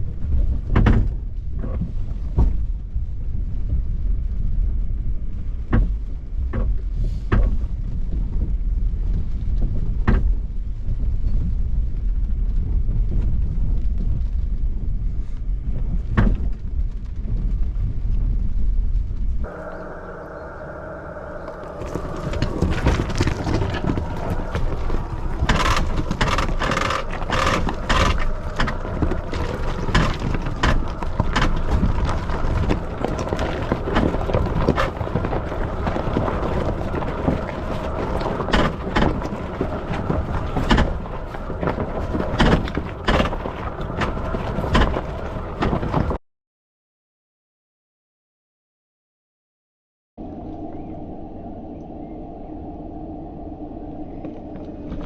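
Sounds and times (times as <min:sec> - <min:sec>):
faint steady hum: 0:19.4 - 0:45.5, 0:50.2 - 0:55.0
truck driving over rocky trail: 0:19.5 - 0:46.2
tyres and suspension knocking: 0:21.0 - 0:45.9.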